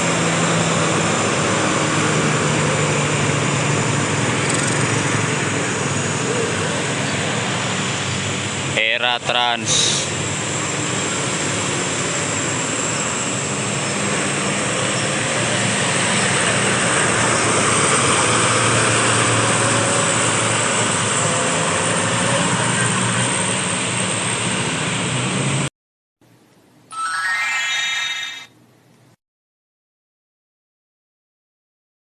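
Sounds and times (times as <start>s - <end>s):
bus diesel engine running: 0.0s - 25.7s.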